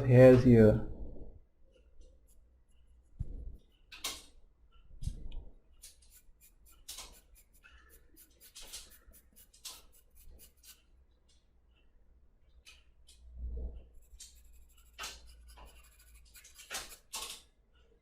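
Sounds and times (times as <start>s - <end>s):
pencil scratching on paper: 5.8s - 10.9s, 13.9s - 17.3s.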